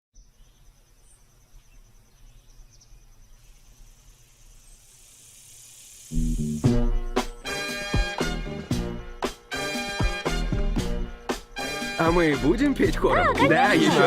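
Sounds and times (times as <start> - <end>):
insects trilling: 0.2 - 14.0
soft hiss: 3.2 - 7.5
loud music: 6.6 - 14.0.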